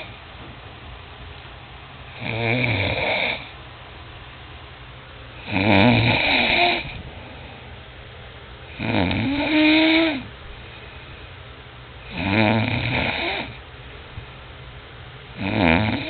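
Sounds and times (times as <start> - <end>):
man snoring: 2.1 - 3.5, 5.4 - 7.0, 8.7 - 10.3, 12.1 - 13.6, 15.4 - 16.0.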